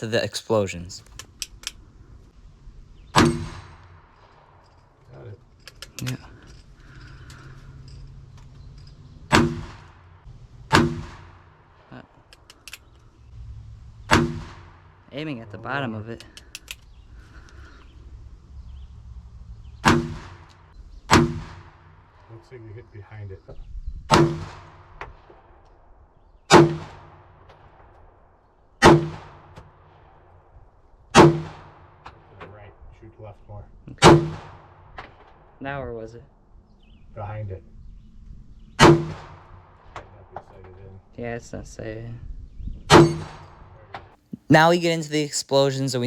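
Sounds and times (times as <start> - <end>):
faint clicks: 12.3 - 13.1, 16.2 - 17.6.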